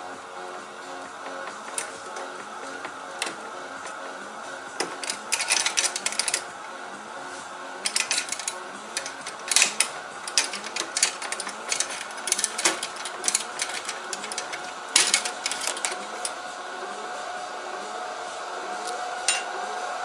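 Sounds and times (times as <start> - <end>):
computer parts clicking: 1.1 - 6.6, 7.8 - 16.4.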